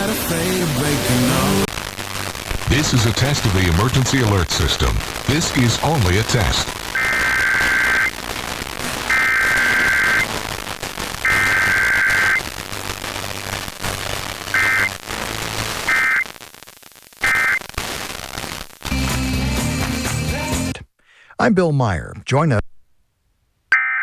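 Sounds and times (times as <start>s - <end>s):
radio static hiss: 0.0s - 20.8s
digital data tone bursts: 5.3s - 8.2s, 9.0s - 10.3s, 11.2s - 12.5s, 14.5s - 15.0s, 15.8s - 16.3s, 17.2s - 17.7s.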